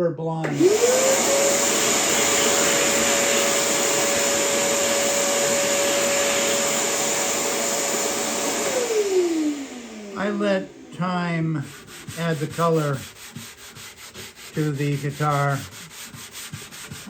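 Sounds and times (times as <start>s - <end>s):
electric fan motor whine: 0.5s - 11.7s.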